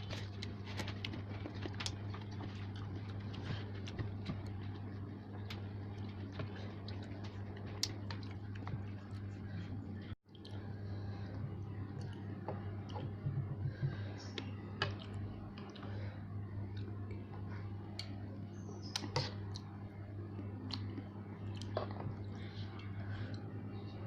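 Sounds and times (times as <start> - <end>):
chewing noodles: 0.0 - 10.7
steady low hum: 0.0 - 24.0.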